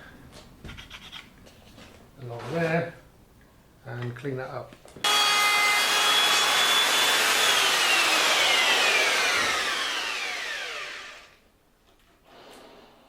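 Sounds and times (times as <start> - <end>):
electric router whining: 5.0 - 11.4.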